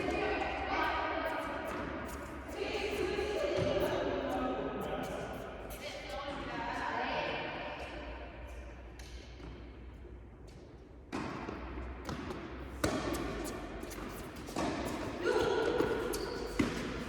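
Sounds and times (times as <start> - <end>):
tennis balls bouncing: 0.0 - 2.3, 3.0 - 4.5, 8.9 - 17.0
rackets striking tennis balls: 8.8 - 9.9, 11.0 - 17.0.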